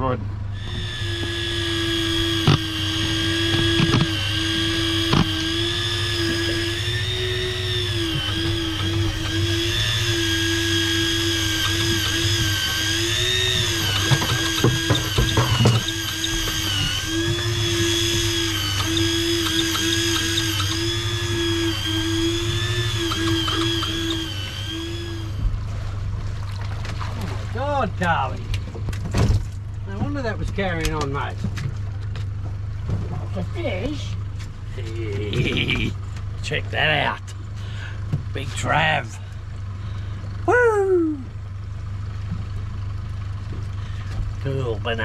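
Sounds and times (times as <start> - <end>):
steady low hum: 0.0 - 45.0
fishing reel drag buzzing: 0.5 - 25.4.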